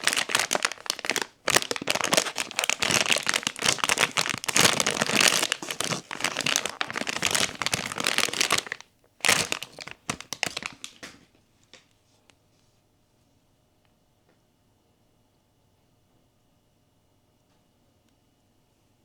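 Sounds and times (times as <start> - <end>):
packaging wrapper crinkling: 0.0 - 11.2.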